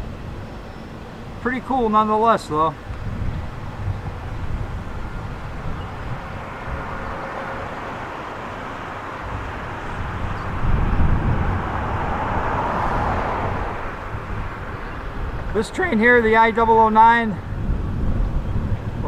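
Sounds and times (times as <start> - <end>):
wind rumble on microphone: 0.0 - 19.0
vehicle passing: 3.3 - 18.0.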